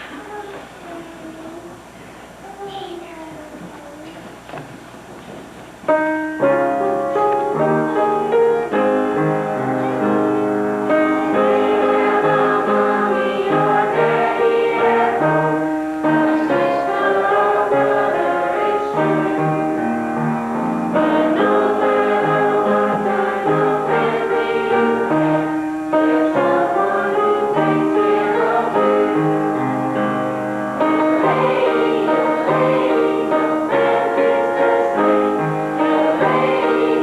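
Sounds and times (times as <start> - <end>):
keyboard chords: 5.8 - 37.0
choir singing: 7.4 - 37.0.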